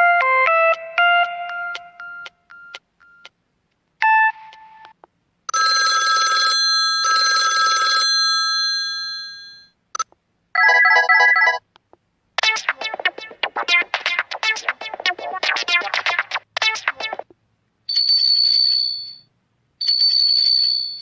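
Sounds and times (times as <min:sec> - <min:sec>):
telephone-bell ringtone: 0:05.5 - 0:09.8, 0:10.6 - 0:11.6, 0:17.9 - 0:21.0.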